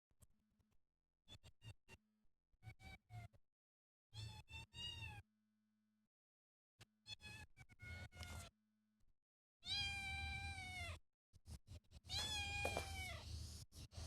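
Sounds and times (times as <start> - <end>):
cat meowing: 9.6 - 11.0, 12.1 - 13.2.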